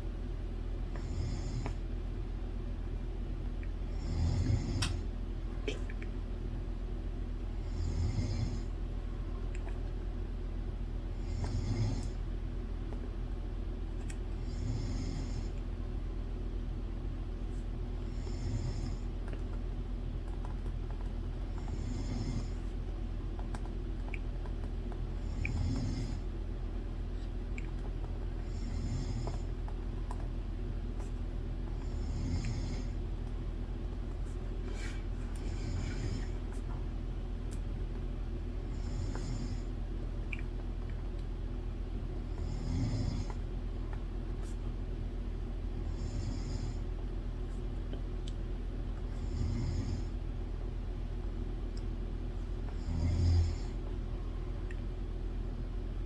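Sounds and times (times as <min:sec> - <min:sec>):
low steady hum: 0:00.0 - 0:56.0
person snoring: 0:01.0 - 0:01.6, 0:03.9 - 0:05.0, 0:07.6 - 0:08.7, 0:11.2 - 0:12.2, 0:18.1 - 0:19.1, 0:21.7 - 0:22.6, 0:25.2 - 0:26.2, 0:28.4 - 0:29.4, 0:31.8 - 0:33.0, 0:35.4 - 0:36.4, 0:42.4 - 0:43.4, 0:45.9 - 0:46.8, 0:49.2 - 0:50.1, 0:52.8 - 0:53.8.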